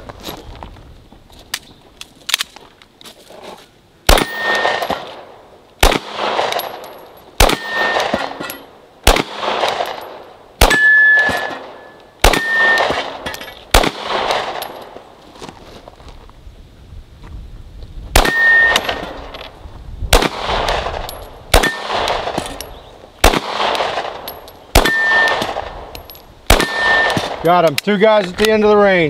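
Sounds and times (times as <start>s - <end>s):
gunshots with long echo: 4.1s - 6.8s, 7.4s - 8.4s, 9.0s - 14.8s, 18.2s - 19.3s, 20.1s - 22.6s, 23.2s - 25.9s, 26.5s - 27.5s
steel targets ringing: 4.2s - 4.9s, 7.5s - 8.7s, 10.6s - 13.5s, 18.2s - 19.2s, 24.8s - 25.4s.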